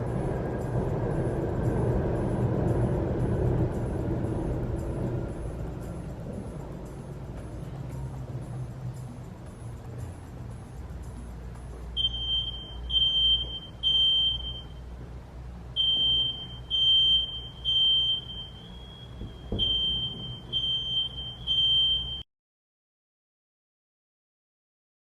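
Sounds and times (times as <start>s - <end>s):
smoke alarm beeping: 12.0s - 14.8s, 15.8s - 22.2s.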